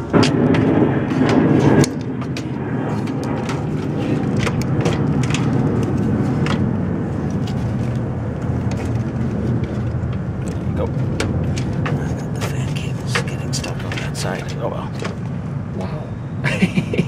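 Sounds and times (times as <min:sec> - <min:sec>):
low rumble: 0:00.0 - 0:17.0.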